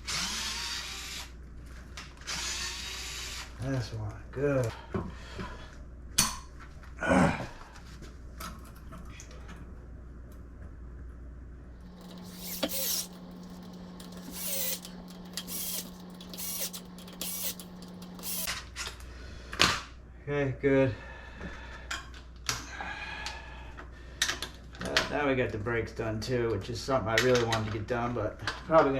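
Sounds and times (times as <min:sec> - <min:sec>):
steady low hum: 0:09.0 - 0:18.5
tools clicking and scraping: 0:11.8 - 0:18.5.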